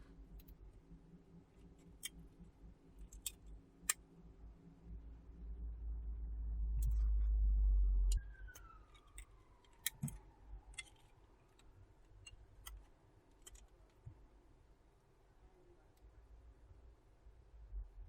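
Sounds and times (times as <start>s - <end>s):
small tool clicks and taps: 11.6s - 14.1s.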